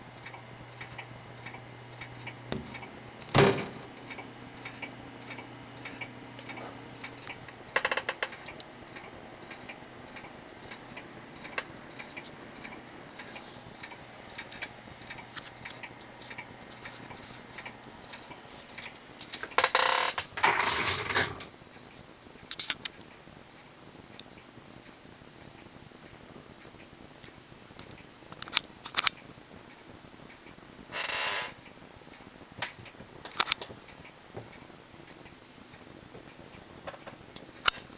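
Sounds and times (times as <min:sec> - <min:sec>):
small clicks and ticks: 0:00.0 - 0:20.2, 0:21.6 - 0:30.6, 0:31.5 - 0:37.9
rattling: 0:02.5 - 0:04.2.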